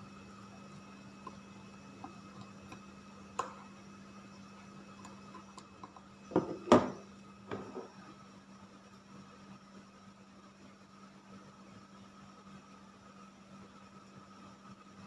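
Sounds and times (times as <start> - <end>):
steady low hum: 0.0 - 15.0
kitchenware knocking and clattering: 6.3 - 8.0.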